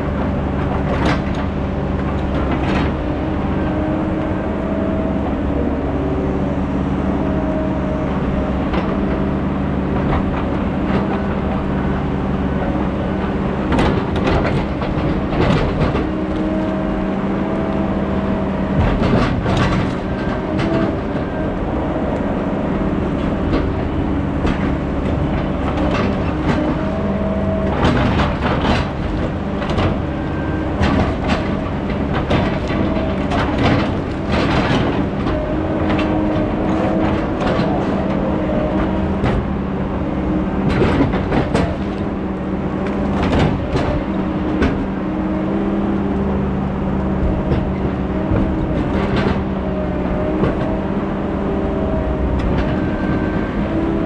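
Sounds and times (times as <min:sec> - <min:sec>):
diesel engine under load: 0:00.0 - 0:54.0
metallic clanks and knocks: 0:23.0 - 0:39.7.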